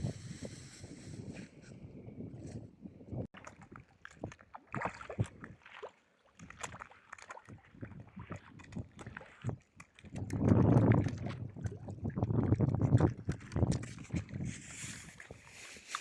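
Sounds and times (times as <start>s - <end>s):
water splashing and sloshing: 3.3s - 16.0s.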